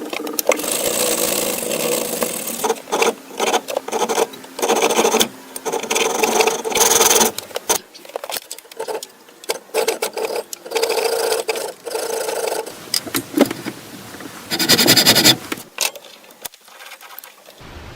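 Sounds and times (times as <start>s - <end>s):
rasping strokes on axe: 0.6s - 7.9s, 8.8s - 15.7s.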